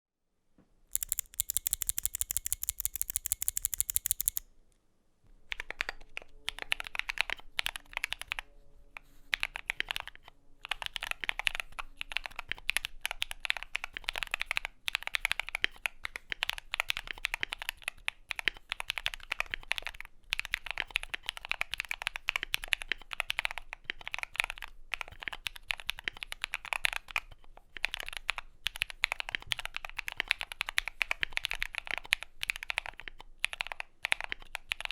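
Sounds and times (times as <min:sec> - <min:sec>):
clicky keyboard typing: 0:00.9 - 0:04.4.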